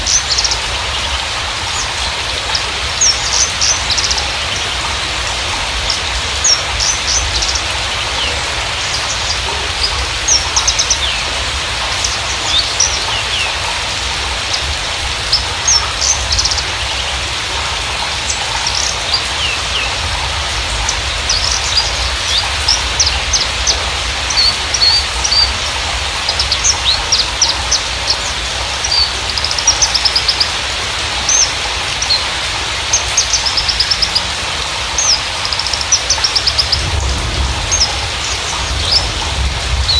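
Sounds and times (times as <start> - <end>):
steady hiss: 0.0 - 39.9.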